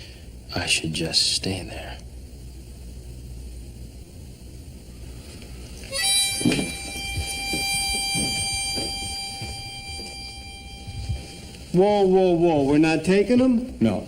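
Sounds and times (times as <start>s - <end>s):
held reedy harmonica-like note: 5.8s - 12.1s.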